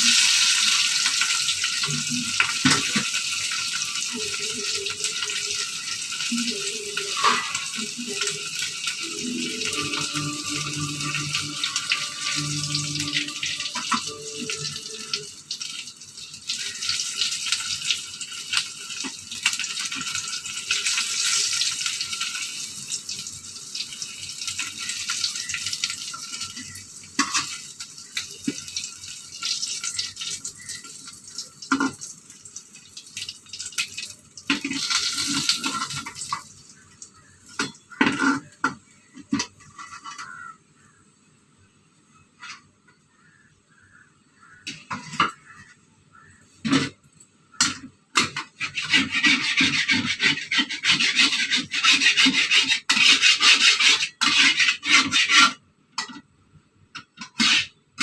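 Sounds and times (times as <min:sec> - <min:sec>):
fish sizzling in a pan: 0:00.0 - 0:40.5.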